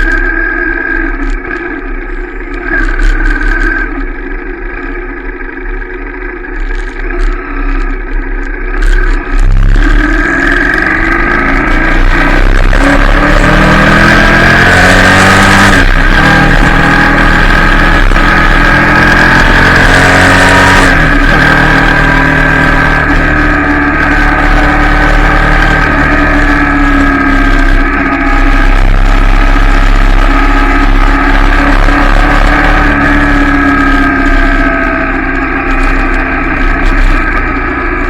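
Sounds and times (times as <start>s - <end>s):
motorcycle engine accelerating: 0.0s - 38.0s.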